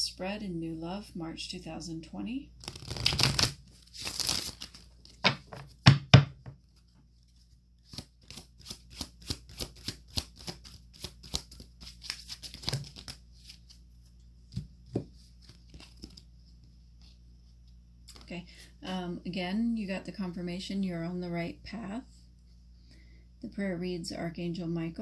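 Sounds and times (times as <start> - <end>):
cards shuffling: 2.6 - 6.0, 7.8 - 16.3.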